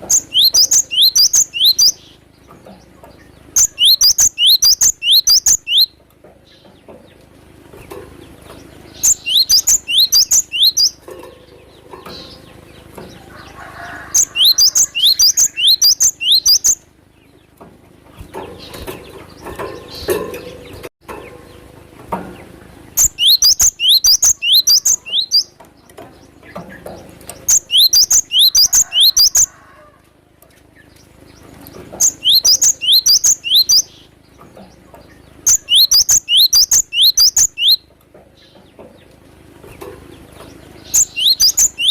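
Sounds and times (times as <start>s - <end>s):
bird calling high rapid notes: 0.0s - 2.1s, 3.5s - 5.9s, 9.0s - 11.0s, 13.9s - 16.8s, 23.0s - 25.6s, 27.4s - 29.6s, 32.0s - 34.1s, 35.5s - 37.8s, 40.9s - 41.9s.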